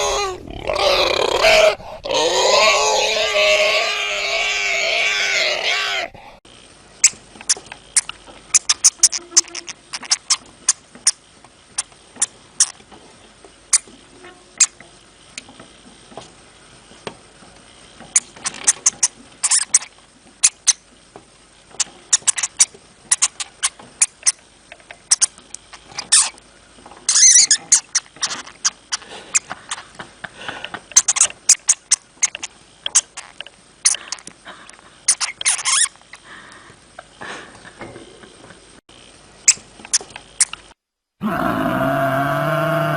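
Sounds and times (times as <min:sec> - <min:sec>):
hamster clicking and squeaking: 0:07.0 - 0:12.8, 0:14.6 - 0:14.8, 0:18.1 - 0:20.8, 0:21.8 - 0:26.4, 0:27.1 - 0:29.9, 0:30.9 - 0:34.3, 0:35.1 - 0:36.0.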